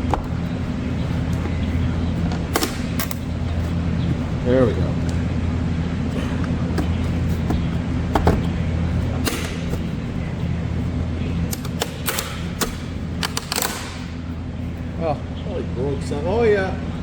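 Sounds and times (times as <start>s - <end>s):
steady low hum: 0.0s - 17.0s
plastic trim clips snapping: 9.2s - 9.7s, 11.5s - 14.1s.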